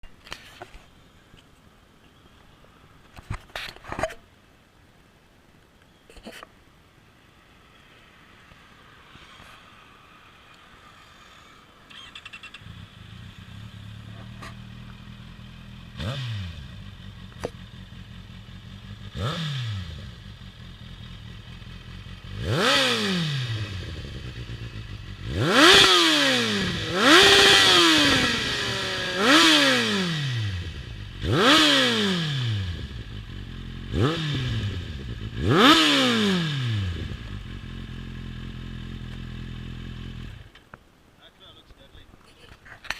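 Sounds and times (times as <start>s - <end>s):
motorcycle engine revving: 11.9s - 40.6s.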